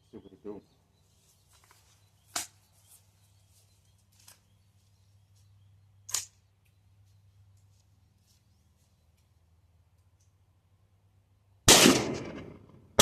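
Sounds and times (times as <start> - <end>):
gunshots: 11.7 - 13.0.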